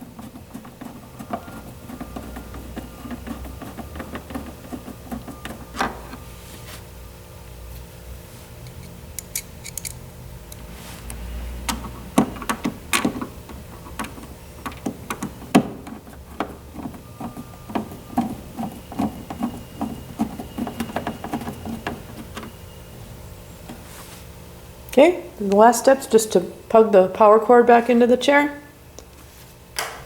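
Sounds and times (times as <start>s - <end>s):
screwdriver clicking: 8.7s - 10.6s.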